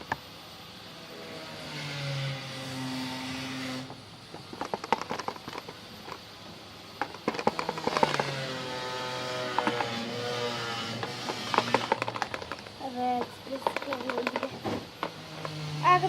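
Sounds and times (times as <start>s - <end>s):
low hum with hiss: 0.0s - 16.0s.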